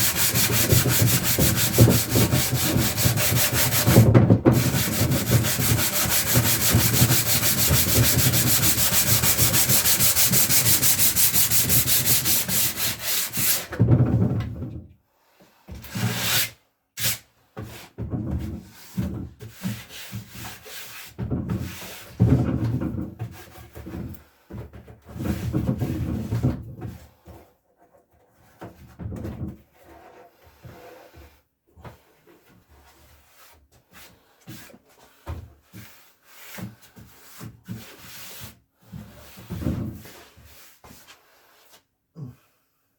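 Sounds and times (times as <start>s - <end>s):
short rubbing strokes: 0.0s - 4.0s, 4.6s - 13.6s
sanding wood: 0.0s - 13.7s.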